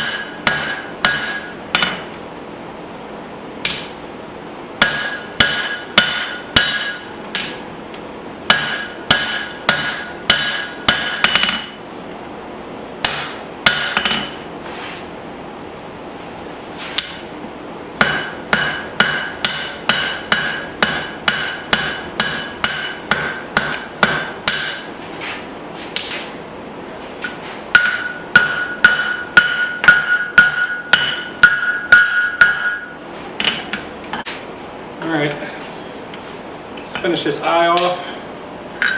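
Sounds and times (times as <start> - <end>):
hammer striking steel on anvil: 0.0 - 2.1, 4.8 - 7.6, 8.5 - 11.8, 13.0 - 14.4, 18.0 - 24.9, 27.2 - 34.3, 37.8 - 38.1.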